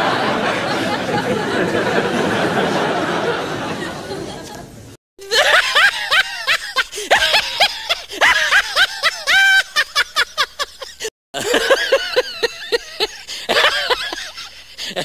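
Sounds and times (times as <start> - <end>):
high-pitched laughter: 5.2 - 15.0.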